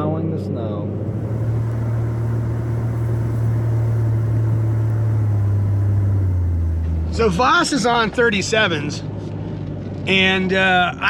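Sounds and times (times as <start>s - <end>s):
car engine droning under load: 0.9s - 8.2s.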